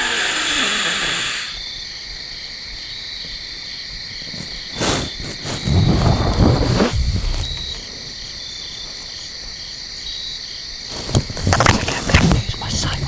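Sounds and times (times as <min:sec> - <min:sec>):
loud hiss: 0:00.0 - 0:01.7, 0:04.3 - 0:09.1
insects chirping: 0:00.0 - 0:13.0
low rumbling noise: 0:05.0 - 0:08.6.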